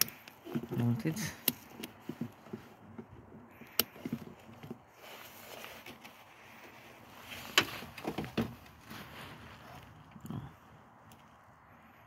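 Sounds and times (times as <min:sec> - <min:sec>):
sharp clicks and light knocks: 0:00.0 - 0:04.9.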